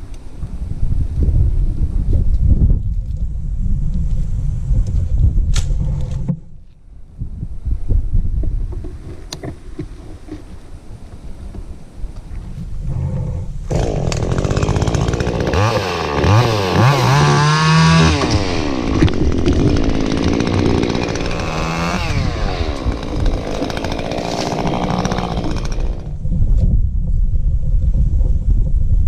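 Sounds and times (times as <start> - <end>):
chainsaw running and revving: 13.7 - 26.2.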